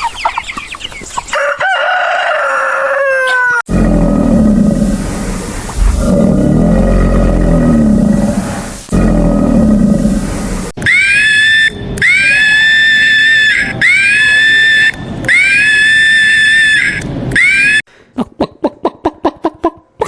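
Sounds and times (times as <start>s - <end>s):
animal deep roar: 3.7s - 10.7s
high-pitched animal calls: 10.8s - 17.8s.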